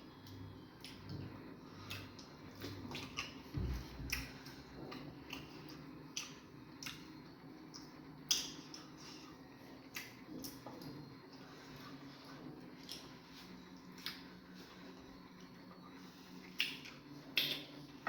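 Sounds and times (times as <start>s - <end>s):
wet chewing and lip smacks: 0.2s - 3.5s, 4.1s - 9.0s, 9.8s - 11.1s, 12.7s - 14.4s, 16.4s - 18.0s.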